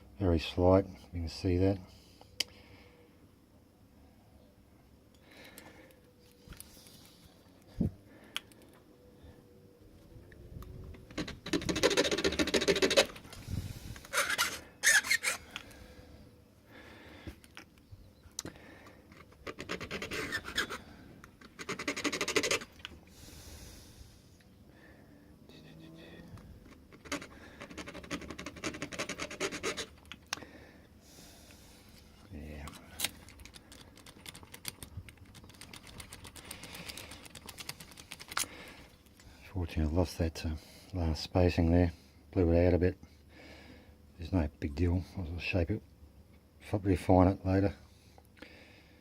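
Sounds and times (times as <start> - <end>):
file rasping on metal: 19.5 - 20.8, 27.1 - 29.9.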